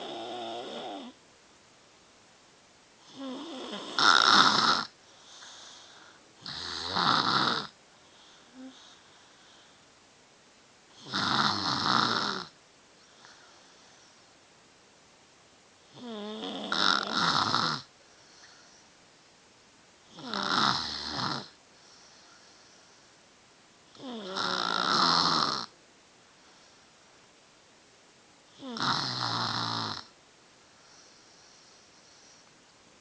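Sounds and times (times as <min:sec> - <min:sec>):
child snoring: 0:00.0 - 0:01.2, 0:03.0 - 0:09.8, 0:10.9 - 0:12.6, 0:15.9 - 0:18.8, 0:20.1 - 0:22.7, 0:23.9 - 0:25.7, 0:28.5 - 0:30.2
quiet breathing: 0:03.0 - 0:10.2, 0:12.4 - 0:14.6, 0:15.7 - 0:19.4, 0:21.0 - 0:24.2, 0:25.6 - 0:27.5, 0:30.0 - 0:33.0.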